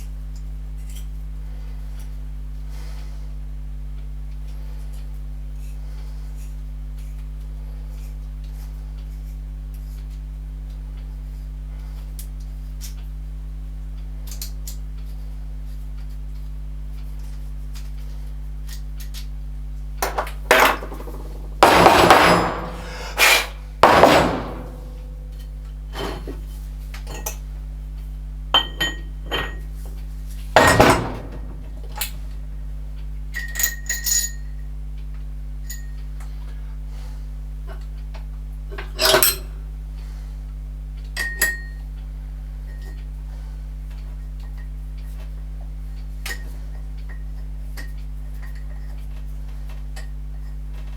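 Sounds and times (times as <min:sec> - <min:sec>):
steady low hum: 0:10.8 - 0:50.9
metal tools clinking and knocking: 0:20.0 - 0:25.1, 0:28.6 - 0:29.7, 0:30.6 - 0:32.2, 0:38.8 - 0:39.5
loud metallic clanks: 0:20.0 - 0:25.2, 0:30.6 - 0:32.1.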